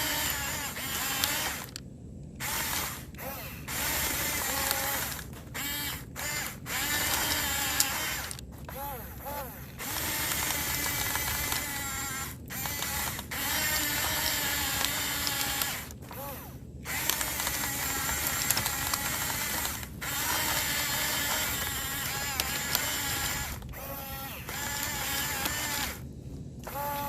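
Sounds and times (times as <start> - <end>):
small electric motors whirring: 0.0 - 27.0
clicks: 16.9 - 23.9.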